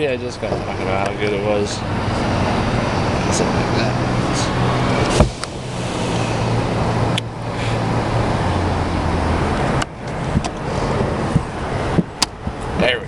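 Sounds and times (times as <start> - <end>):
spray gun hissing: 5.1 - 6.7.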